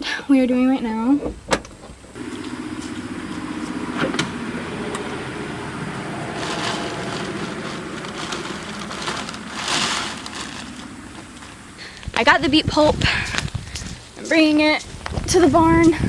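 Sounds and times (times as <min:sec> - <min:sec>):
pickup truck engine running: 0:02.2 - 0:13.9
rustling: 0:02.2 - 0:14.1.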